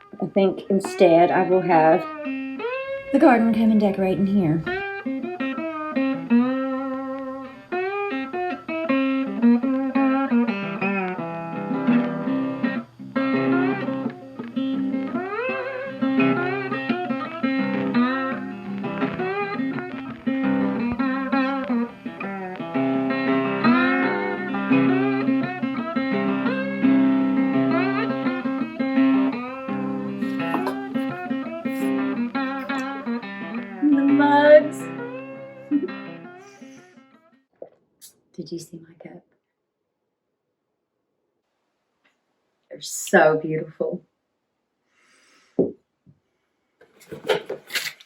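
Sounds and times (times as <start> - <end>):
bluesy plucked guitar music: 0.0 - 37.0.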